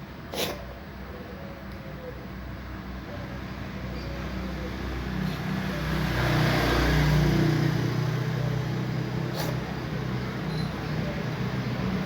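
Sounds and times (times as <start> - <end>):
vehicle engine humming: 2.9 - 12.0.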